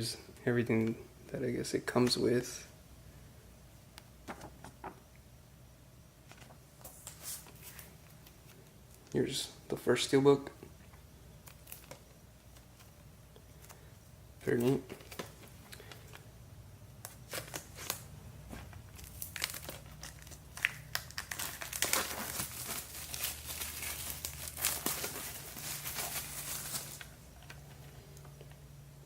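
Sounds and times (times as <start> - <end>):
plastic packaging crinkling: 11.4 - 16.2, 17.1 - 28.5.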